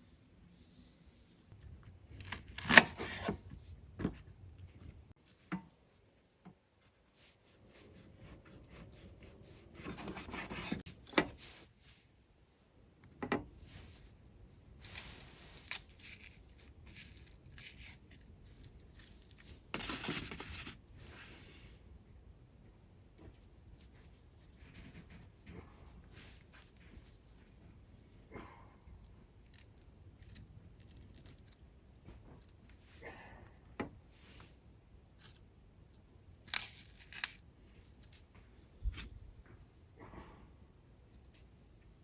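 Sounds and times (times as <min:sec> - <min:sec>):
rustling and scraping: 0:06.8 - 0:12.1, 0:14.8 - 0:21.8, 0:23.2 - 0:28.2.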